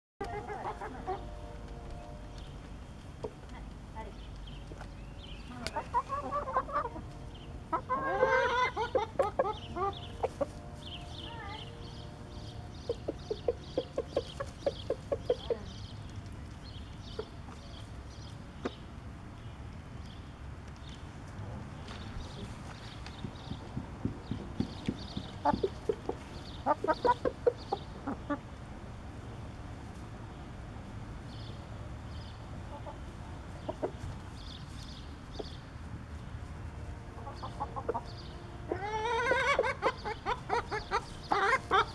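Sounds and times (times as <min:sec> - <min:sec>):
rooster clucking: 0:00.2 - 0:01.3, 0:05.5 - 0:10.6, 0:12.9 - 0:15.7, 0:25.4 - 0:28.4, 0:37.2 - 0:38.1, 0:38.7 - 0:41.9.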